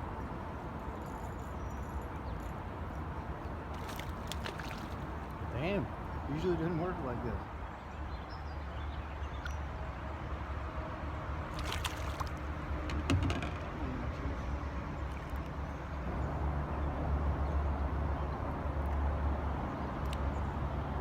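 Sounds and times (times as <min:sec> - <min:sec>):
water sloshing against boat: 0:03.5 - 0:06.6, 0:11.5 - 0:13.6.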